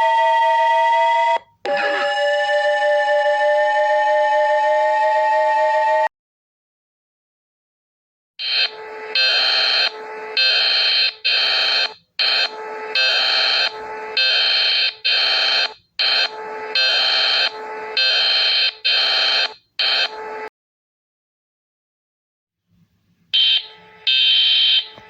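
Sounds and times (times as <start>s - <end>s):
loud electronic alarm tone: 0.0s - 6.1s, 8.4s - 20.5s, 23.4s - 25.0s.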